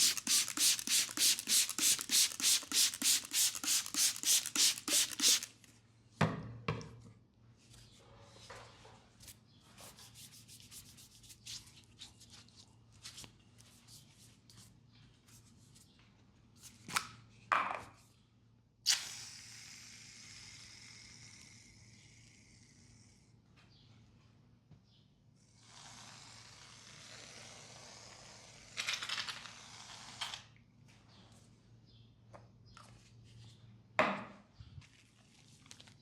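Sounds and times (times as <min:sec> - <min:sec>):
hands rubbing a leg: 0:00.0 - 0:05.6.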